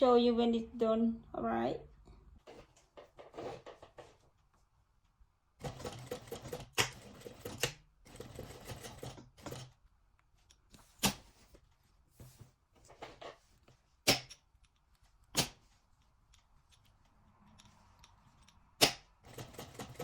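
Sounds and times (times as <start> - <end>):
sewing machine stitching: 5.6 - 9.8, 18.8 - 20.0.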